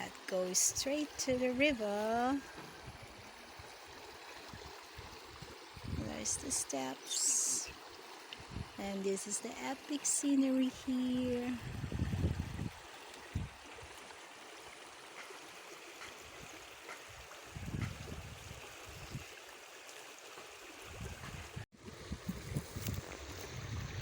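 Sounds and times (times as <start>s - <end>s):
river water flowing: 0.0s - 24.0s
low rumbles on microphone: 11.6s - 12.8s.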